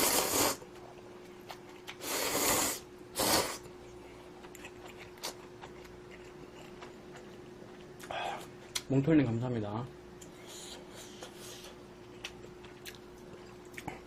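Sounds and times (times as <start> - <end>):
person eating noodles: 0.0 - 0.6, 1.5 - 8.8
faint steady hum: 0.0 - 14.0.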